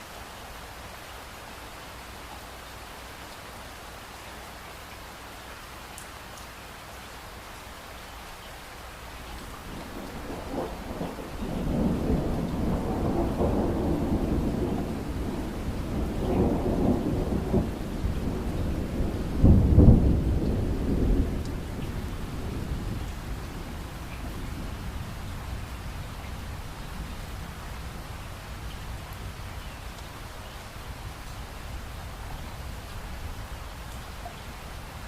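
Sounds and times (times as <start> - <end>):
steady rain: 0.0 - 35.0
thunder rolling: 9.6 - 25.7.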